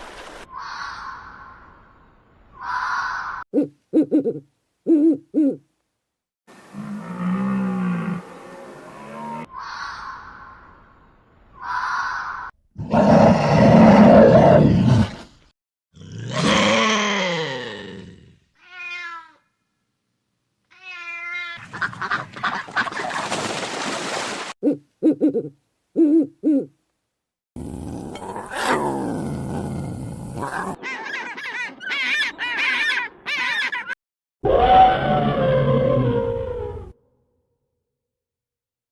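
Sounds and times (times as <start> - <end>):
large animal roaring: 6.7 - 9.5, 12.8 - 15.4, 16.0 - 18.3, 27.6 - 30.8, 34.4 - 37.0
long animal call falling in pitch: 34.4 - 37.0.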